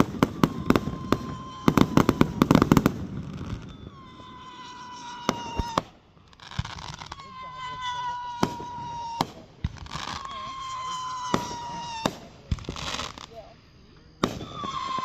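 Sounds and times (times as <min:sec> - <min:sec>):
firecrackers popping: 0:00.0 - 0:13.5, 0:14.2 - 0:15.0.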